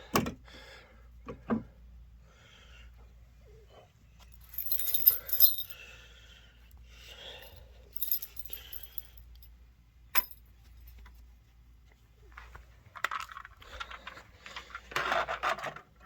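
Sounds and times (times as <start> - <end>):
keys jangling: 4.4 - 5.8, 8.0 - 9.2.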